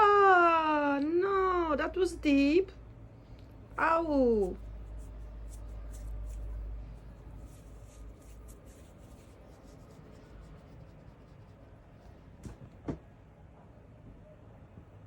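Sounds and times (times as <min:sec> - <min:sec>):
faint scratchy rustling: 0:03.8 - 0:12.7.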